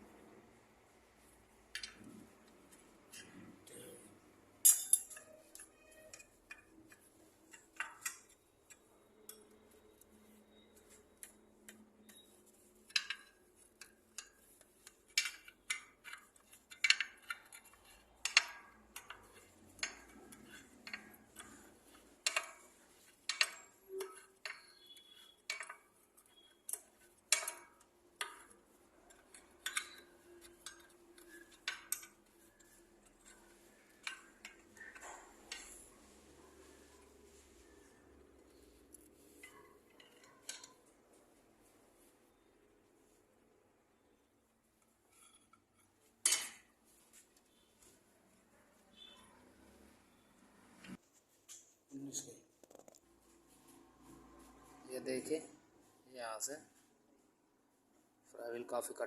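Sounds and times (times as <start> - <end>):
metal hand tools clinking: 4.6 - 9.5, 12.0 - 35.8.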